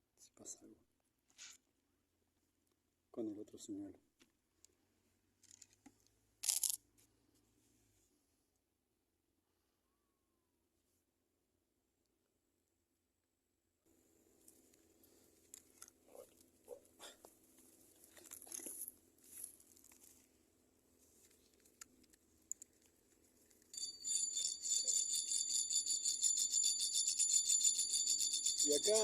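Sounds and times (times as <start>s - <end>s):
handling clicks and rustles: 14.5s - 20.3s
small bells jingling: 23.7s - 29.0s.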